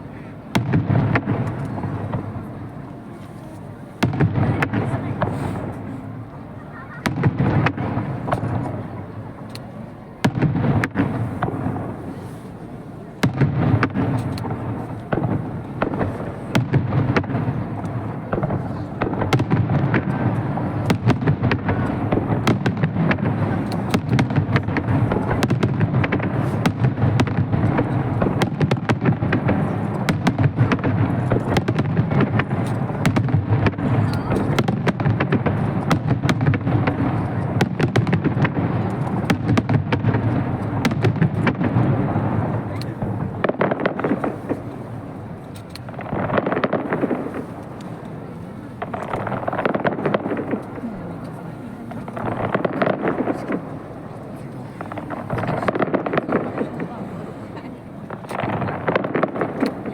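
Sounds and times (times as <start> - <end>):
fireworks booming: 0.0 - 59.9
rapid bangs and crackling: 13.2 - 47.8, 48.8 - 50.8, 51.9 - 54.0, 54.8 - 57.0, 58.1 - 59.9.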